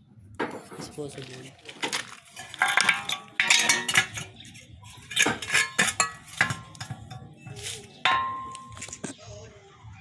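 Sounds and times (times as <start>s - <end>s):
metal tools clinking together: 1.2s - 9.2s.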